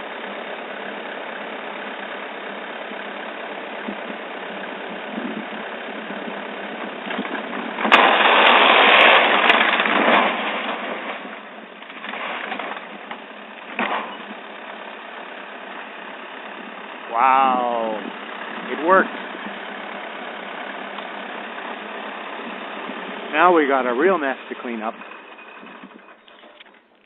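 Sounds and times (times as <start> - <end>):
engine running: 0.0 - 27.0
barn collapsing with crash: 7.0 - 14.4.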